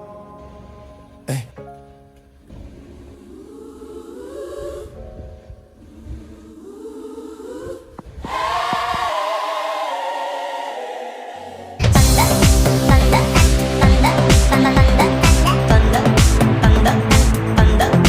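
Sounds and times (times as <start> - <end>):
gospel choir singing wordless chords: 0.0 - 1.6, 2.4 - 18.0.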